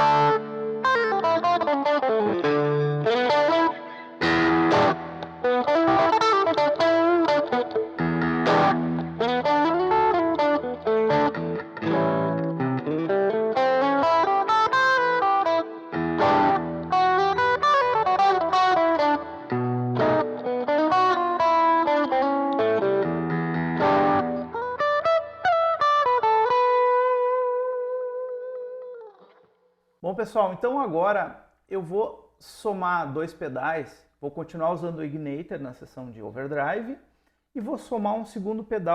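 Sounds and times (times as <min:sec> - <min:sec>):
overdriven electric guitar: 0:00.0 - 0:29.7.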